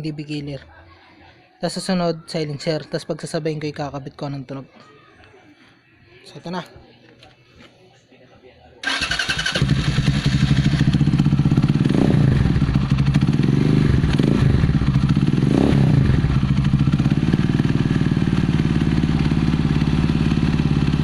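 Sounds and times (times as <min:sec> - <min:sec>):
motorcycle engine idling and revving: 0:08.8 - 0:21.0.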